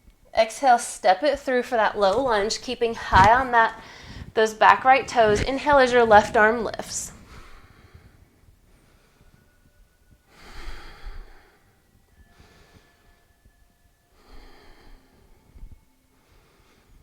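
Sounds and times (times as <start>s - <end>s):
person breathing through nose: 3.8s - 4.4s, 10.3s - 13.2s, 14.2s - 17.0s.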